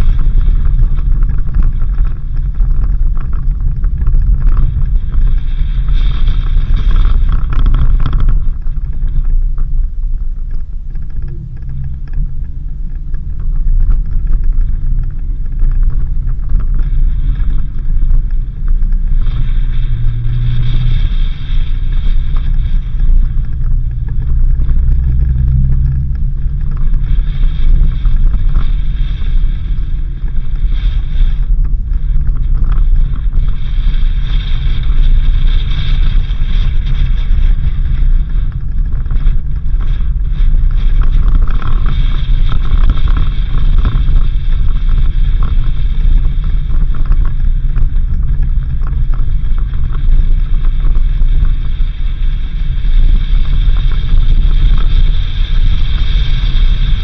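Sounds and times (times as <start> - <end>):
vehicle engine and tyres rumbling: 0.0 - 57.0
wind on microphone: 0.0 - 57.0.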